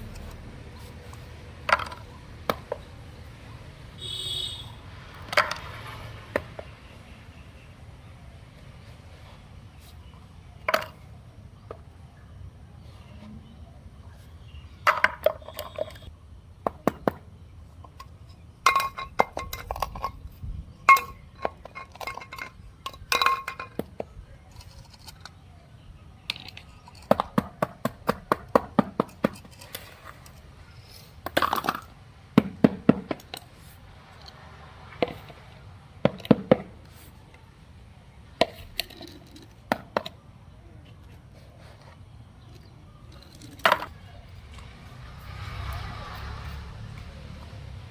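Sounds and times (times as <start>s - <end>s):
small hard objects clinking: 0.0s - 3.2s, 14.8s - 16.1s, 17.9s - 25.4s, 26.2s - 32.0s, 38.4s - 40.2s, 42.5s - 47.2s.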